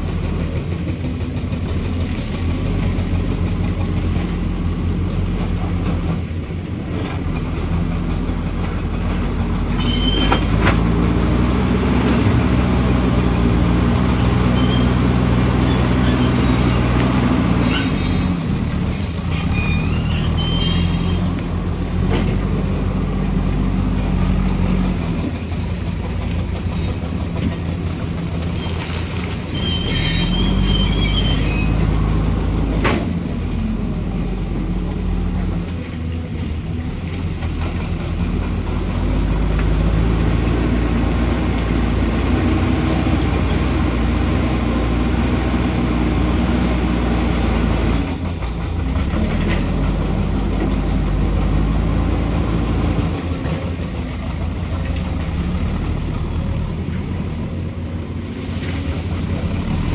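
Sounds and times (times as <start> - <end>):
heavy diesel engine working: 0.0 - 59.9
high squeals: 9.7 - 10.6, 14.0 - 18.5, 19.3 - 21.6, 28.6 - 32.3.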